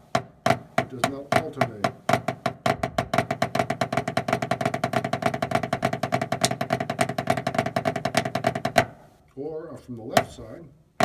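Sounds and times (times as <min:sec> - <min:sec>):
drumsticks on practice pad: 0:05.9 - 0:07.5.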